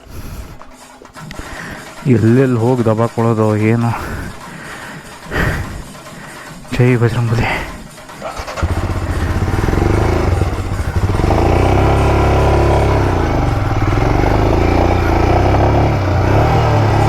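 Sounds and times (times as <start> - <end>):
motorcycle engine revving: 7.4 - 17.0.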